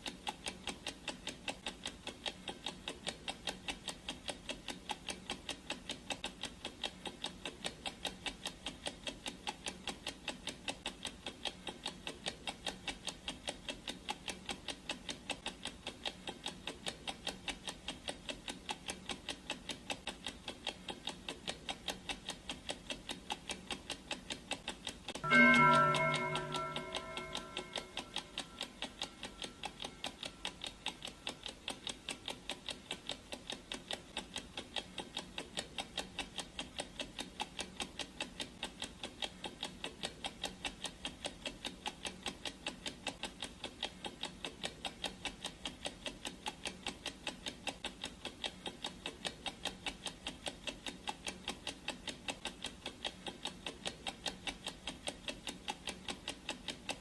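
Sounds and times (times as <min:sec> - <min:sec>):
clock ticking: 0:00.0 - 0:57.0
gong ringing: 0:25.2 - 0:28.6.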